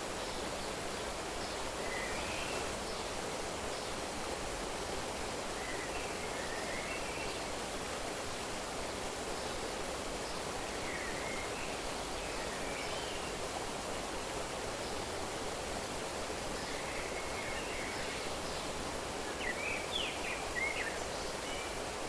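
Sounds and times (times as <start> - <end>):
flowing water rushing: 0.0 - 22.0.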